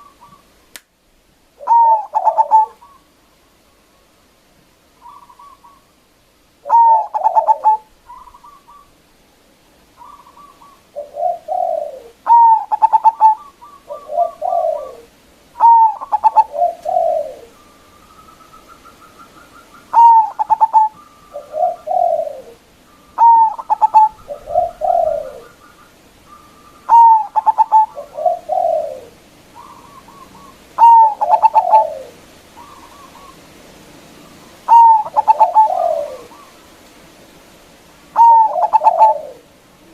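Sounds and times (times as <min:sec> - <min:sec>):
dove cooing: 0:01.6 - 0:03.1, 0:05.0 - 0:05.9, 0:06.6 - 0:09.0, 0:10.0 - 0:33.6, 0:34.2 - 0:36.7, 0:38.1 - 0:39.9.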